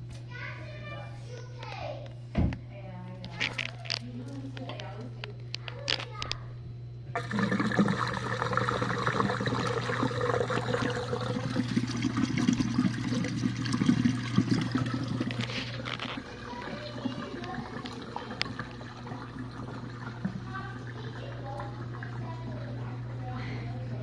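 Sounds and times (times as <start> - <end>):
dishwasher pump hum: 7.1 - 24.0
water gurgling and rushing: 7.2 - 23.4.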